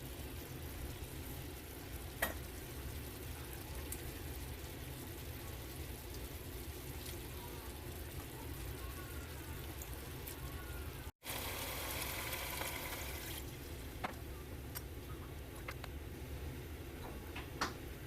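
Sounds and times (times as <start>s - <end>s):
food sizzling in a pan: 0.0s - 13.4s.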